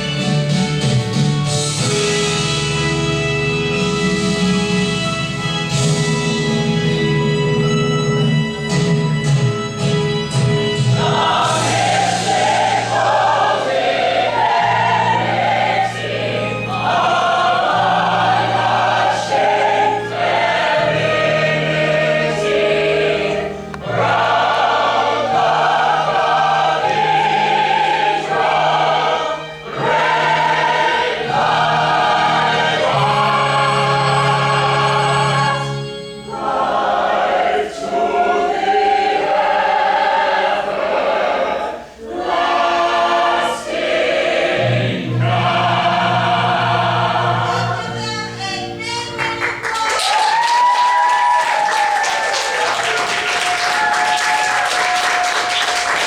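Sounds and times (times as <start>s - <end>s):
musical accompaniment: 0.0s - 56.0s
choir singing: 10.6s - 48.8s, 50.3s - 56.0s.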